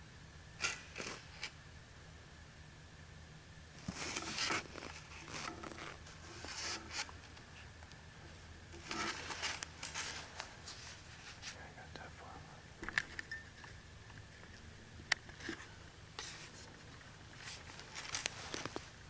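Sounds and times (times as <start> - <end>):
faint low hum: 0.0 - 19.0
clothing rustling and scraping: 3.8 - 7.7, 8.8 - 11.6, 15.4 - 19.0.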